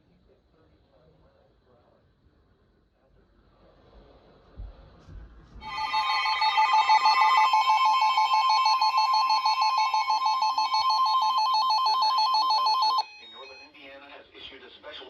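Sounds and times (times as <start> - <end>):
warbling electronic alert tone: 5.6 - 13.2.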